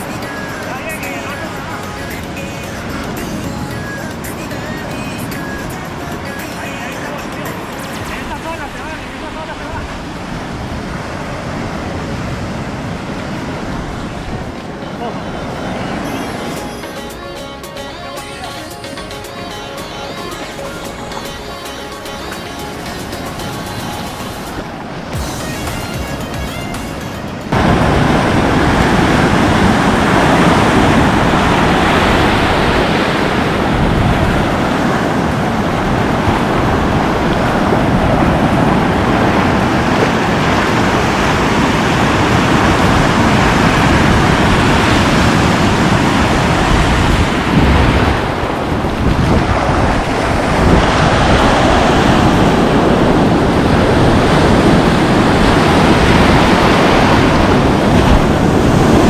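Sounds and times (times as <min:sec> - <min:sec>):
sea surf breaking ashore: 0:00.0 - 0:59.0
wind buffeting microphone: 0:08.1 - 0:16.5, 0:27.5 - 0:59.0.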